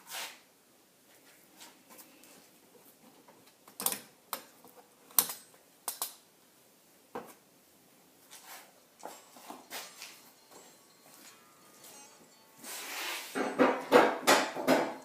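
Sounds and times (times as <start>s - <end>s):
tools clicking and knocking: 3.7s - 6.2s.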